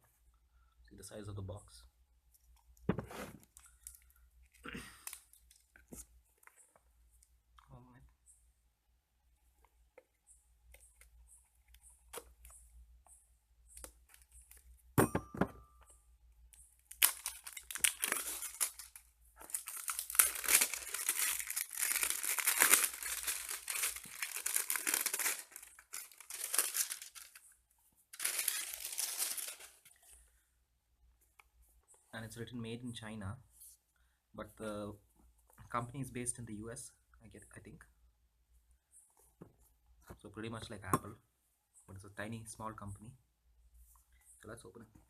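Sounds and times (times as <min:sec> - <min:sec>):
plastic shrink-wrap crinkling: 0:16.8 - 0:30.0.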